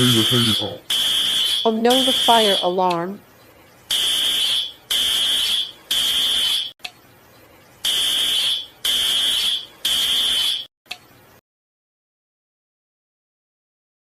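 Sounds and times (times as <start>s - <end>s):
fire alarm beeps: 0.0s - 2.8s, 3.9s - 6.8s, 7.8s - 10.7s.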